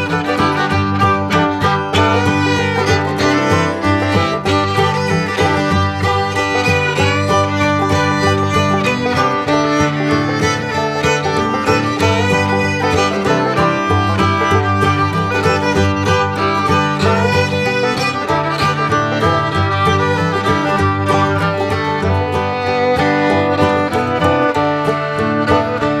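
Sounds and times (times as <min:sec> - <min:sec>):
bluegrass music with fiddle: 0:00.0 - 0:26.0.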